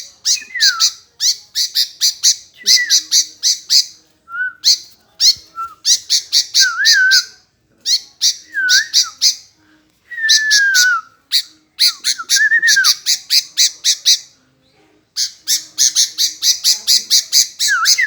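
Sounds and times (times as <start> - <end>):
bird harsh chattering: 0.0 - 4.0, 4.6 - 7.3, 7.9 - 9.5, 15.2 - 18.0
bird whistled phrases: 0.2 - 9.5, 10.2 - 14.2, 15.2 - 18.0.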